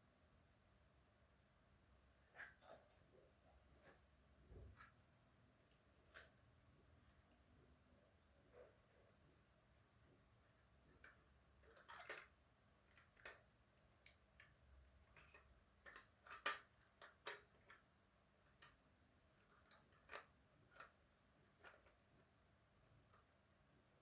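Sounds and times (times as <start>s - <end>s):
small hard parts clicking: 10.5s - 17.9s, 19.4s - 22.2s.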